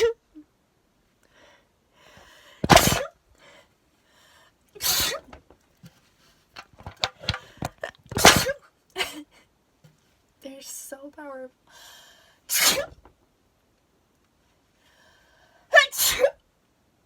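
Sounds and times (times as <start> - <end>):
woman sneezing hard: 2.6 - 3.2, 4.8 - 5.4, 8.2 - 8.6, 12.5 - 13.0, 15.7 - 16.4.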